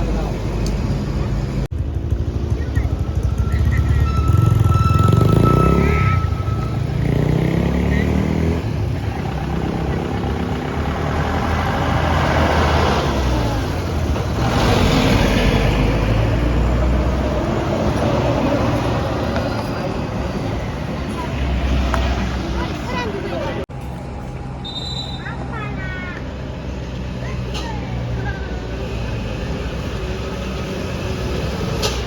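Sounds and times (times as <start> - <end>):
vehicle engines accelerating: 0.0 - 24.6
vehicles passing by: 0.0 - 32.0.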